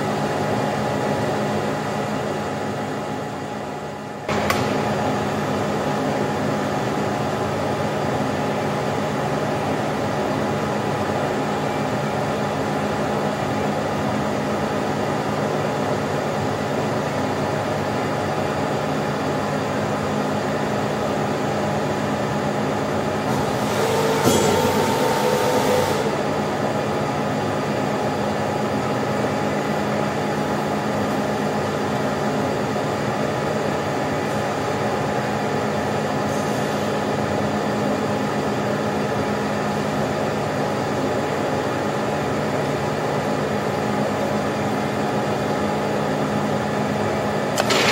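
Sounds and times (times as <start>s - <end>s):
hydraulic power unit humming: 0.0s - 47.9s.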